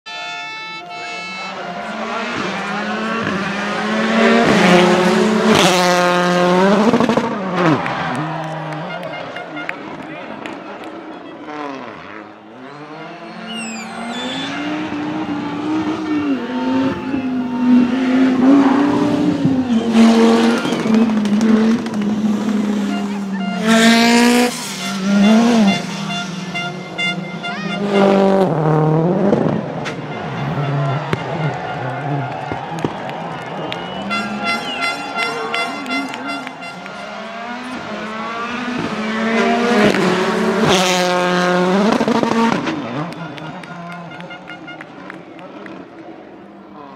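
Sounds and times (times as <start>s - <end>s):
rally car engine at high revs: 1.7s - 46.5s.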